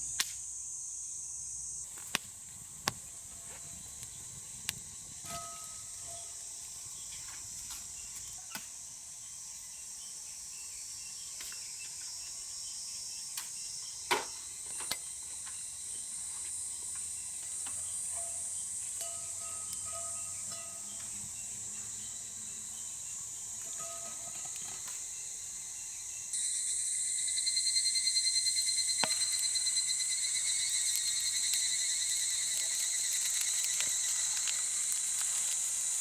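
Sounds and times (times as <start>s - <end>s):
high-pitched insect chorus: 0.0s - 36.0s
campfire popping and crackling: 1.9s - 5.8s, 28.6s - 36.0s.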